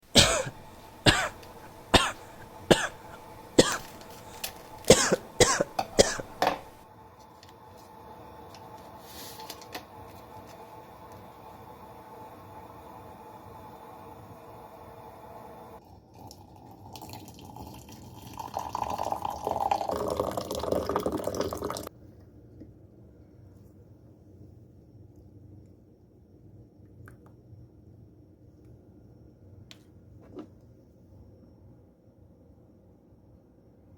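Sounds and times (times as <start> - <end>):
person coughing: 0.2 - 6.8
liquid pouring into container: 15.8 - 21.9.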